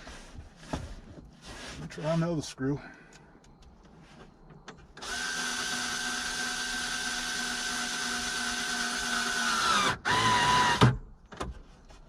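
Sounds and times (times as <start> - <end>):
power drill driving a screw: 5.0 - 11.0.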